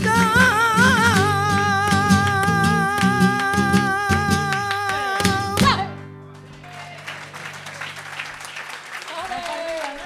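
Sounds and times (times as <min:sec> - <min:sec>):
person singing flamenco: 0:00.0 - 0:06.6
strummed guitar: 0:00.0 - 0:06.6.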